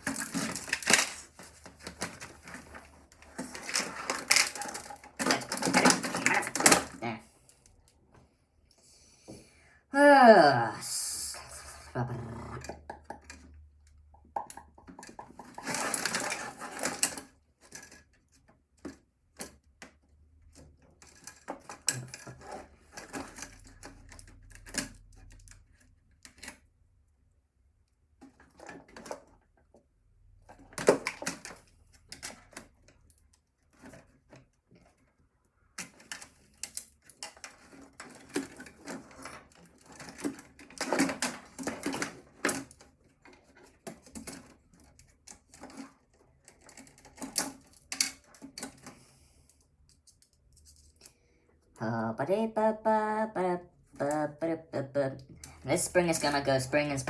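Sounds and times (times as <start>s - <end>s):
small parts clicking and clattering: 0.0s - 8.0s, 12.6s - 27.0s, 28.0s - 51.2s.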